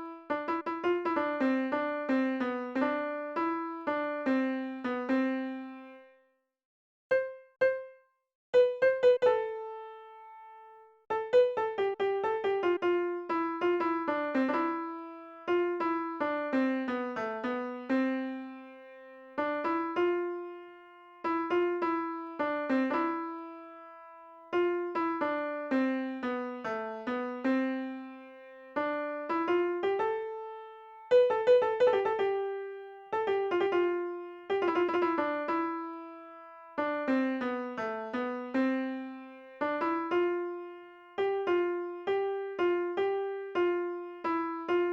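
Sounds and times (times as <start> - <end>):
gentle keyboard melody: 0.0 - 6.2, 7.1 - 44.9.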